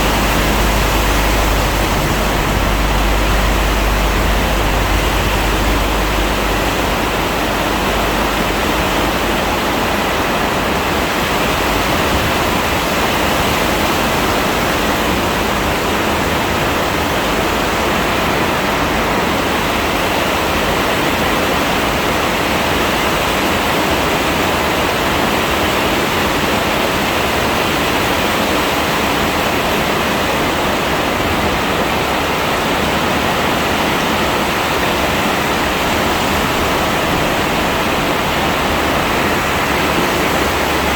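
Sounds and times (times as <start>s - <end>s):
low rumble: 0.0s - 20.5s, 35.3s - 40.9s
heavy rain pouring: 0.0s - 21.8s, 34.5s - 40.9s.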